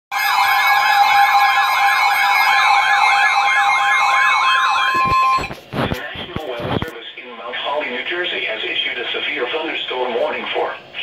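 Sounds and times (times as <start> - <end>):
siren warbling rapidly: 0.1 - 5.7
steady alert attention tone: 2.3 - 5.7.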